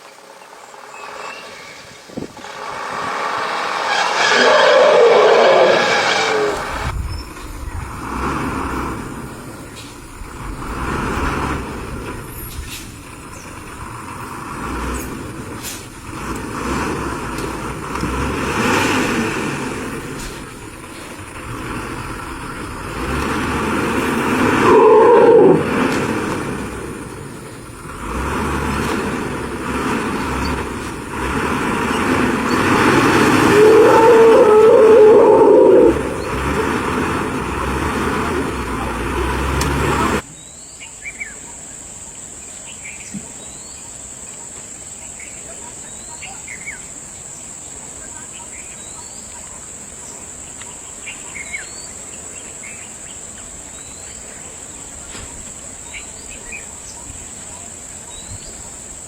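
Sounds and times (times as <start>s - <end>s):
insects droning: 0.0s - 59.0s
short chirps: 0.7s - 3.9s
brief rising whistle: 0.7s - 6.9s
vehicle engine running: 2.2s - 40.2s.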